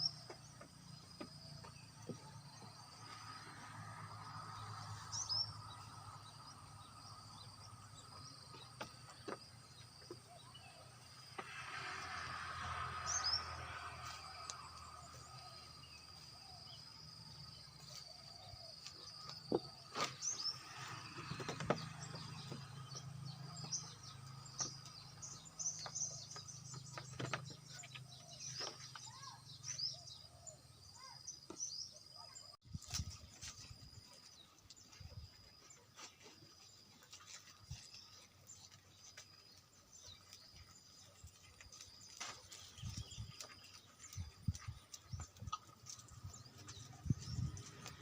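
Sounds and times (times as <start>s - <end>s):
small birds chirping: 0.0s - 48.0s
high insect drone: 11.2s - 17.3s.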